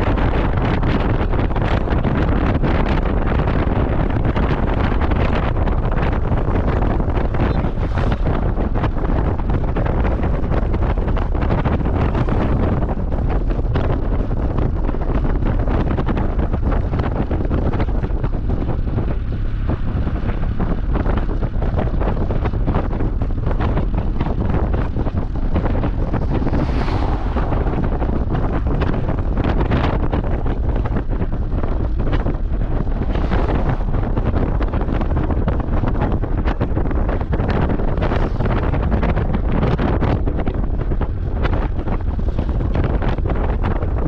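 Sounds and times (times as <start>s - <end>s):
wind buffeting microphone: 0.0s - 44.0s.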